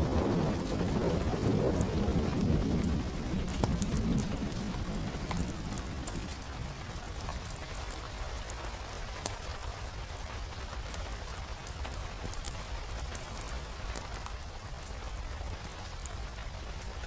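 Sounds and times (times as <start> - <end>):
sharp drips and ticks: 0.0 - 17.0
steady rain: 0.0 - 17.0
thunder rumble: 0.0 - 17.0.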